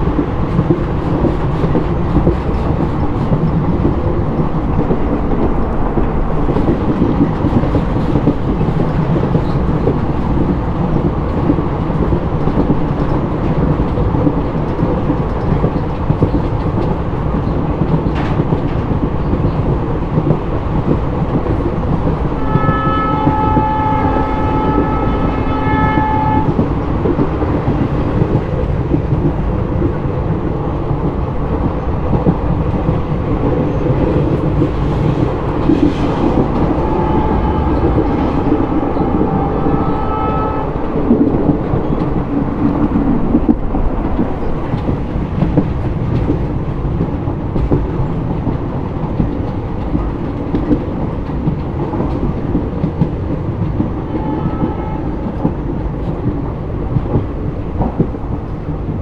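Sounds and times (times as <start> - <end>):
train wheels rumbling on track: 0.0 - 59.0
train horn blast: 22.3 - 26.8, 35.8 - 42.0, 54.0 - 55.5.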